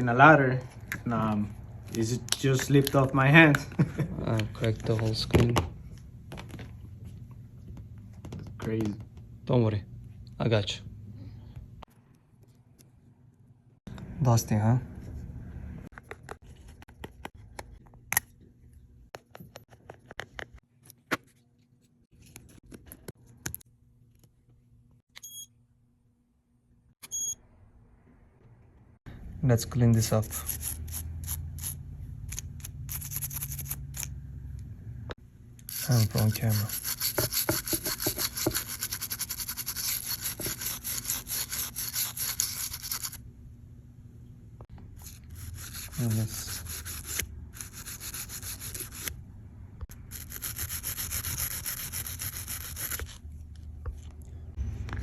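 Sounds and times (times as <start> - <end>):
short electronic beep: 27.0 - 27.4
small brush scrubbing a phone: 35.7 - 43.2, 45.0 - 49.1, 50.1 - 53.2.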